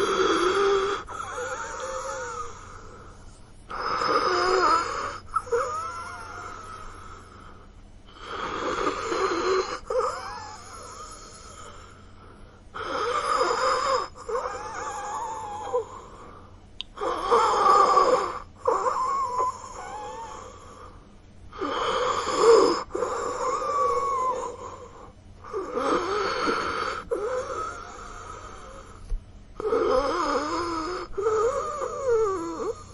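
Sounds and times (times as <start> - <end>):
rasping breath: 0.0 - 32.9
person wheezing: 9.1 - 12.0.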